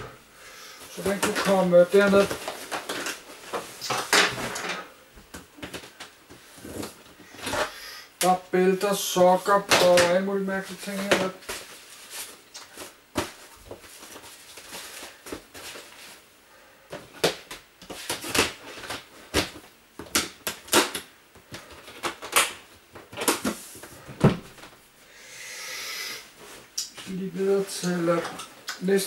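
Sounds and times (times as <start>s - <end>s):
household objects being handled: 0.7s - 7.7s, 9.4s - 16.2s, 26.3s - 28.7s.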